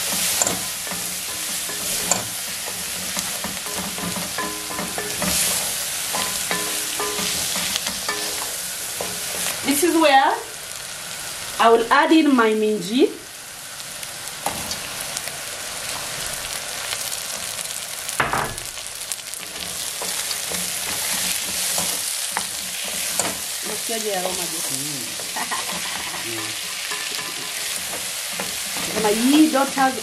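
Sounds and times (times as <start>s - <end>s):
spoon scraping a pot: 0.0s - 9.6s, 25.2s - 29.5s
food sizzling in oil: 0.0s - 30.0s.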